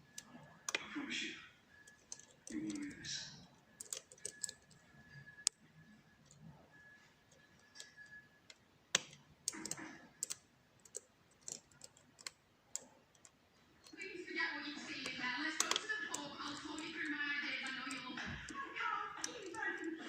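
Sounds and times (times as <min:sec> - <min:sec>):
lock picks clicking: 0:01.8 - 0:05.6, 0:07.3 - 0:14.0, 0:15.0 - 0:18.6, 0:19.2 - 0:20.0.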